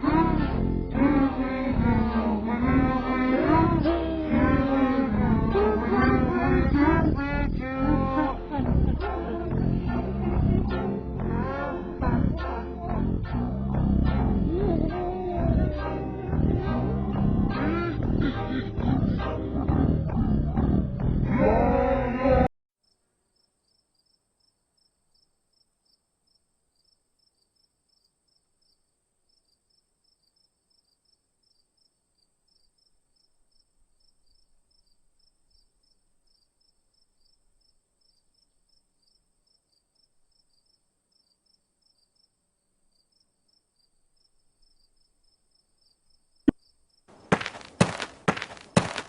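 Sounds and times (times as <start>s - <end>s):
faint cricket chirping: 22.8s - 47.4s.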